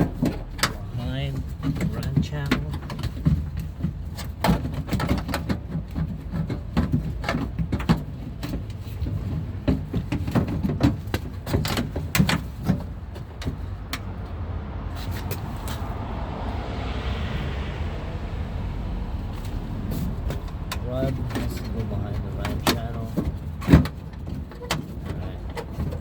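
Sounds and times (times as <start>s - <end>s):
steady low rumble: 12.0s - 24.5s
soft rushing noise: 13.0s - 22.9s.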